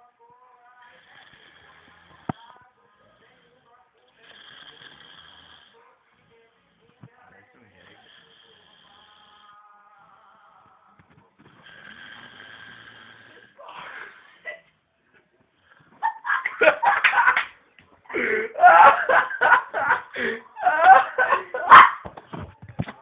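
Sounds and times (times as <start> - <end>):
people laughing hard: 16.0 - 22.1.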